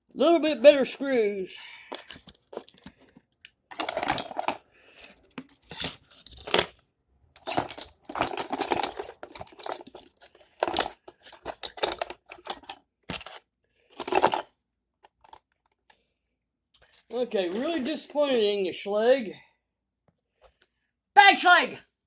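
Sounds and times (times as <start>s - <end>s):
small metal parts clinking: 1.9s - 6.8s, 7.4s - 14.5s.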